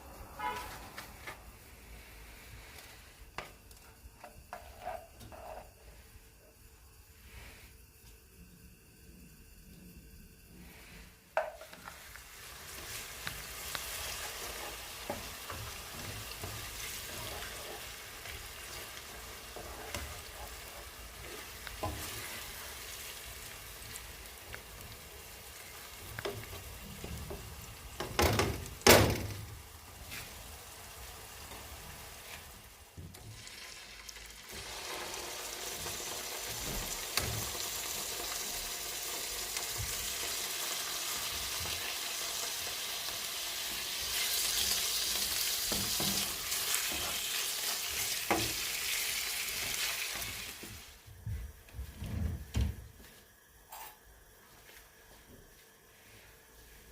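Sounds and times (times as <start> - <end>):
food sizzling in a frying pan: 10.4 - 51.1.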